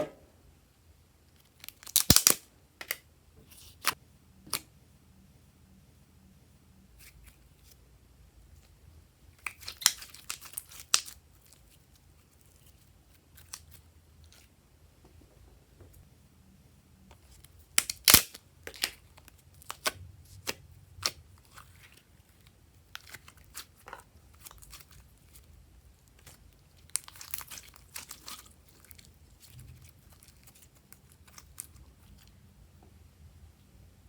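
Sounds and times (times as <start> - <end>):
crunching and tearing: 1.6 - 2.4, 17.8 - 20.0, 26.0 - 32.3.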